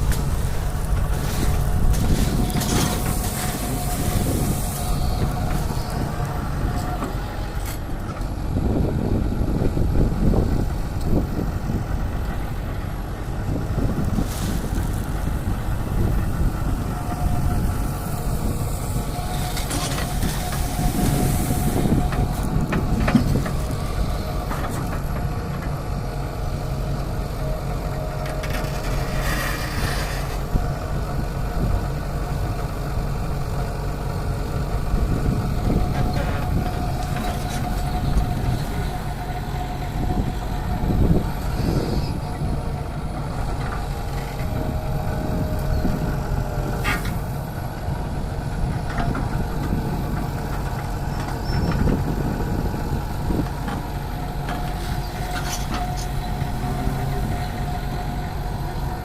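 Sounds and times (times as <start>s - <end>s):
heavy diesel machinery running: 0.0s - 59.0s.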